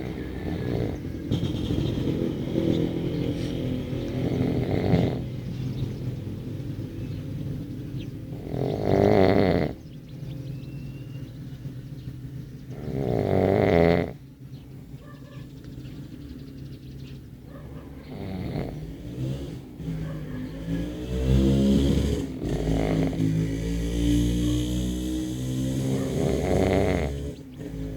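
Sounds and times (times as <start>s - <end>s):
person snoring: 0.0s - 1.0s, 4.1s - 5.3s, 8.4s - 9.8s, 12.8s - 14.2s, 18.1s - 18.9s, 21.3s - 23.4s, 25.4s - 27.9s.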